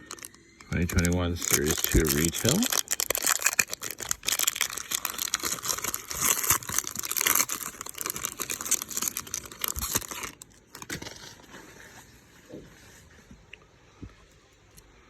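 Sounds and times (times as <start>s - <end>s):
foil wrapper tearing and crinkling: 0.0s - 12.0s.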